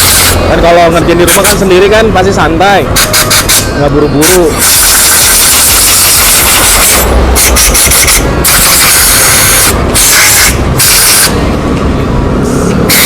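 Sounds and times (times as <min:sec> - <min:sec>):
air blow gun hissing bursts: 0:00.0 - 0:00.4, 0:04.4 - 0:11.4, 0:12.5 - 0:13.0.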